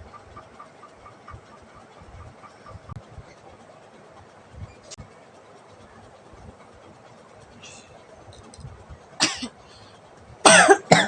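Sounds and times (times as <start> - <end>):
soft breath hiss: 2.5 - 10.4.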